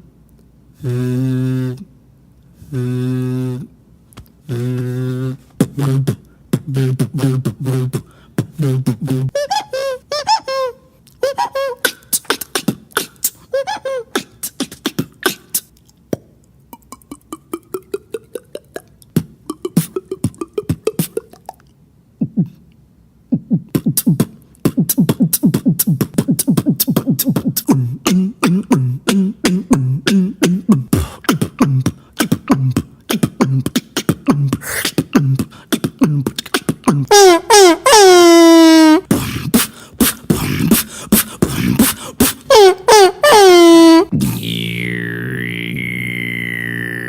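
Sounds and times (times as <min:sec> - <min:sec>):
person beatboxing: 0:00.8 - 0:01.9, 0:04.4 - 0:09.8, 0:11.2 - 0:22.6, 0:23.3 - 0:37.1, 0:38.8 - 0:43.2, 0:44.0 - 0:47.0
gliding pitched vocal tones: 0:11.2 - 0:22.6, 0:23.4 - 0:37.1, 0:44.0 - 0:47.0.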